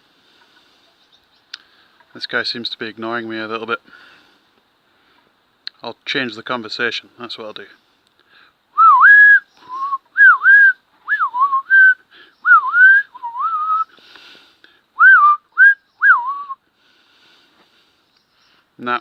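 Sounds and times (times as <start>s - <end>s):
man whistling swooping notes: 8.8s - 13.9s, 15.0s - 16.6s.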